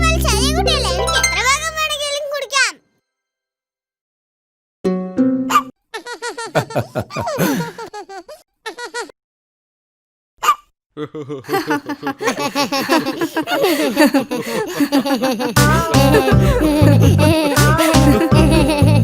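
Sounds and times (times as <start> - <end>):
cartoon characters laughing: 5.5 - 9.1, 11.0 - 19.0.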